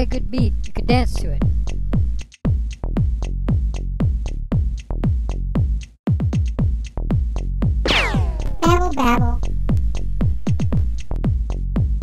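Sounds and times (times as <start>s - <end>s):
deep kick drums: 0.0s - 12.0s
electronic dance music: 7.9s - 11.1s.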